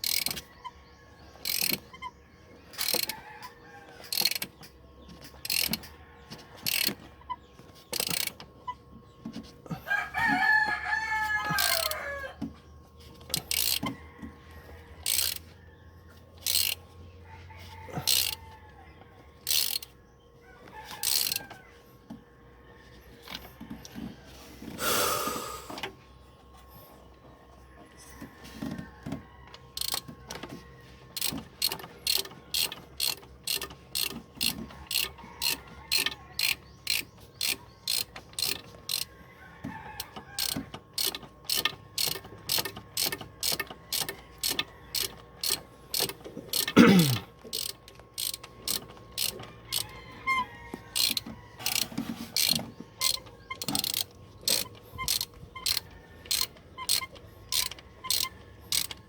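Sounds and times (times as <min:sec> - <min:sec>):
ratchet wrench clicking: 0:00.0 - 0:00.5, 0:01.4 - 0:02.1, 0:02.7 - 0:03.2, 0:04.0 - 0:06.0, 0:06.6 - 0:07.0, 0:07.9 - 0:08.4, 0:11.4 - 0:12.0, 0:13.3 - 0:14.0, 0:15.0 - 0:15.5, 0:16.4 - 0:16.8, 0:18.0 - 0:18.4, 0:19.4 - 0:19.9, 0:21.0 - 0:21.4, 0:29.8 - 0:30.1, 0:31.2 - 0:39.1, 0:40.0 - 0:59.0.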